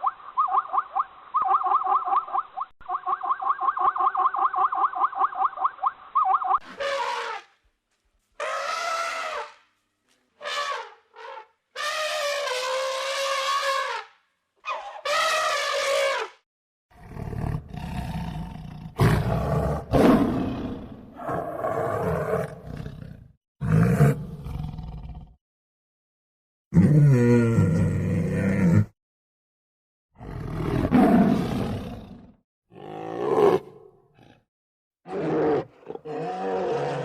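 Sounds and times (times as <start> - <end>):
deep rough animal roaring: 30.2 - 34.4, 35.1 - 37.0.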